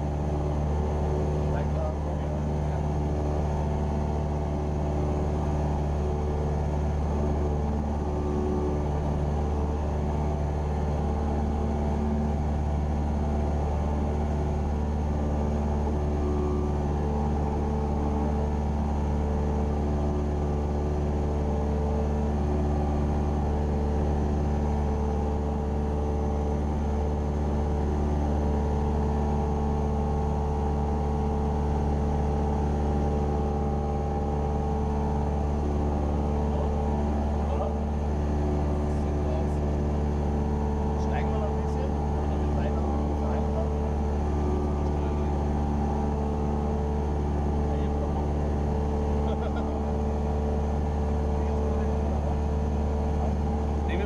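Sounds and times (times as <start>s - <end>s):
propeller aircraft engine droning: 0.0s - 54.0s.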